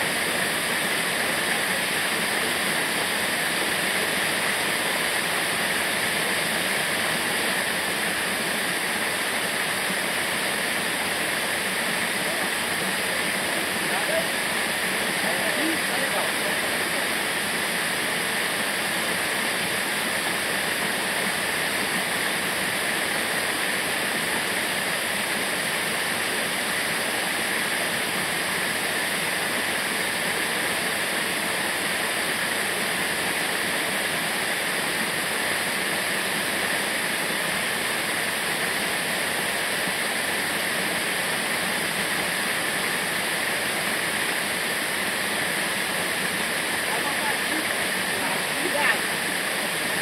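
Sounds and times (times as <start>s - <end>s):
waterfall rushing: 0.0s - 50.0s.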